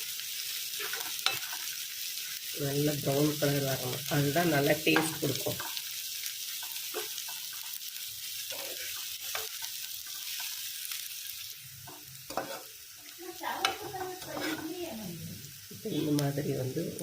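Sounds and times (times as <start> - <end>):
onions sizzling in oil: 0.0 - 17.0
stirring scraping knocks: 13.6 - 14.8.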